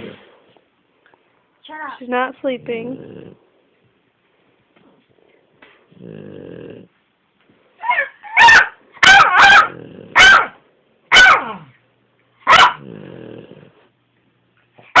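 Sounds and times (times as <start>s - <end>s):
dog snoring rasp: 2.6s - 3.6s, 5.9s - 6.9s, 9.7s - 10.2s, 12.7s - 13.9s
dog barking: 7.8s - 11.7s, 12.4s - 12.8s.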